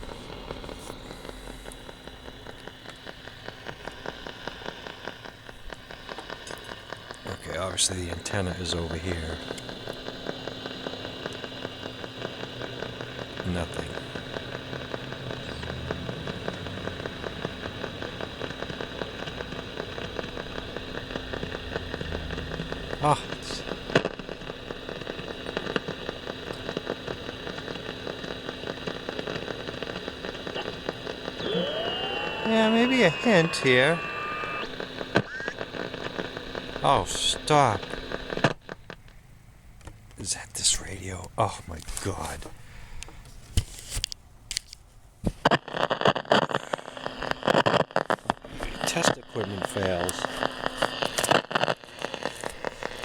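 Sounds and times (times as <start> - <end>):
radio static hiss: 0.0 - 44.2, 45.3 - 53.0
crackling clicks: 0.0 - 53.0
faint steady whine: 0.0 - 53.0
faint steady whistle: 6.1 - 23.9, 28.9 - 38.0.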